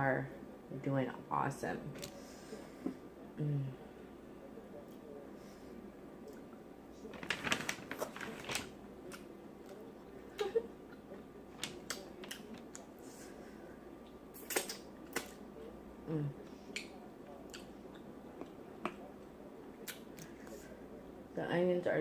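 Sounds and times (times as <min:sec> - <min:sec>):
lip smacking and chewing: 0:14.0 - 0:15.4, 0:16.7 - 0:19.0.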